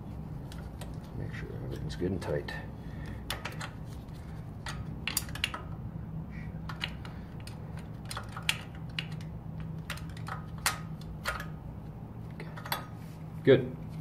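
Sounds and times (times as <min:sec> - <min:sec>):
spanner clicking on metal: 0:04.6 - 0:05.8, 0:06.6 - 0:11.6.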